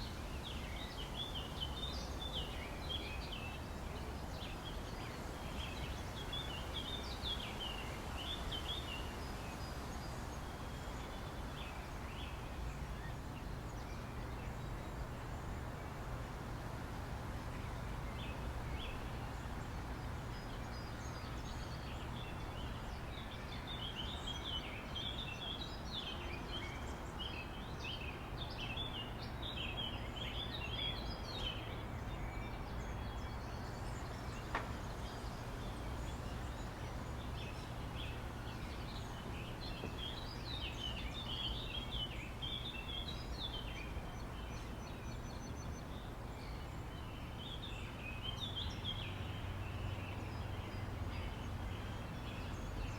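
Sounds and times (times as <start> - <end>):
small birds chirping: 17.5 - 52.9.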